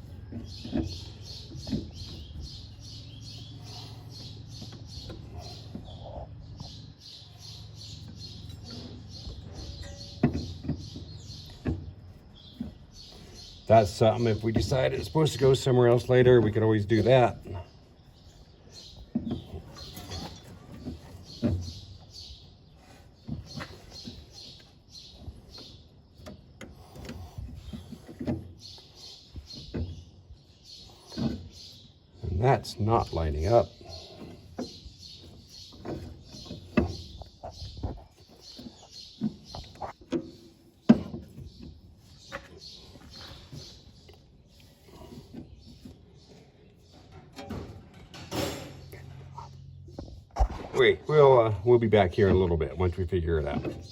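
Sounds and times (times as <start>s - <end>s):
bird chirping: 0.0s - 53.9s.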